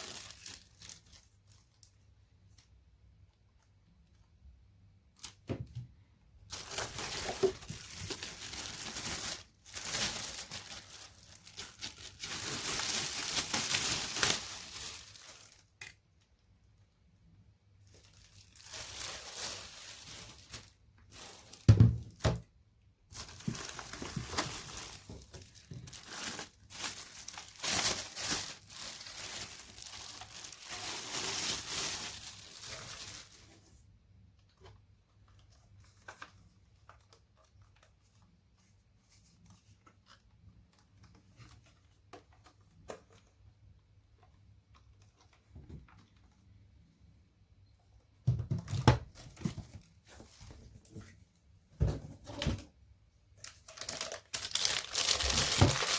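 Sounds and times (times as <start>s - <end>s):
packaging crinkling and rustling: 0.0s - 2.7s, 6.5s - 16.4s, 17.8s - 22.4s, 23.1s - 33.7s, 34.4s - 43.4s, 53.4s - 55.9s.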